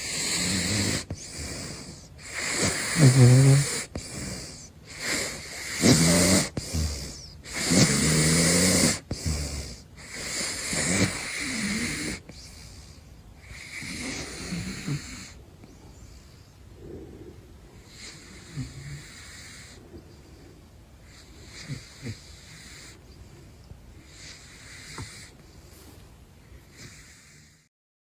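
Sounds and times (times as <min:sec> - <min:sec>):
animal snoring: 0:00.0 - 0:25.9, 0:26.6 - 0:27.7.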